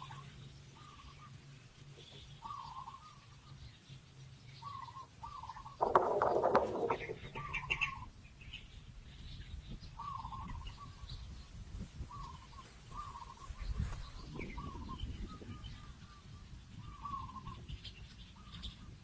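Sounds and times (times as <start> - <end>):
bird wavering call: 2.4 - 3.6, 4.6 - 8.1, 12.1 - 19.0.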